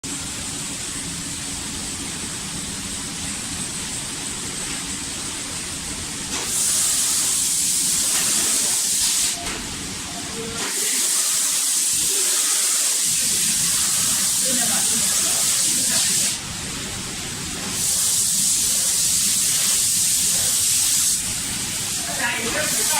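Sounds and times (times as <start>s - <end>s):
spray gun hissing: 6.3s - 9.4s, 10.6s - 16.5s, 17.6s - 22.9s.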